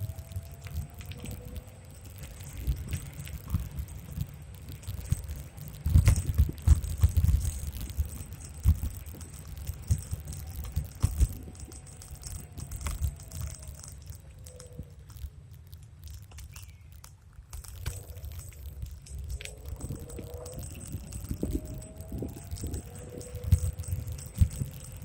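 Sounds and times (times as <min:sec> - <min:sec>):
wind buffeting microphone: 0:00.0 - 0:15.0, 0:17.8 - 0:25.0
scooter rattles and knocks: 0:00.0 - 0:25.0.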